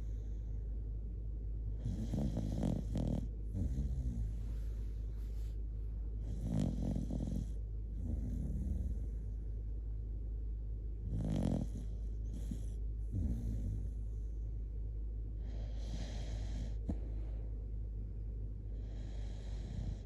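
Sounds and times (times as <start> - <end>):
dog snoring: 1.7 - 5.5, 6.2 - 9.3, 11.0 - 14.3, 15.4 - 17.4, 18.7 - 20.0.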